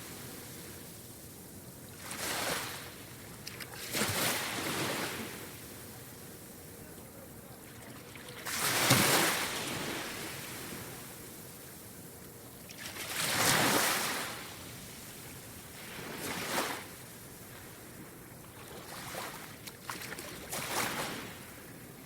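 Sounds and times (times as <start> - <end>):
ocean waves breaking: 2.0 - 6.0, 7.6 - 11.2, 12.7 - 21.7.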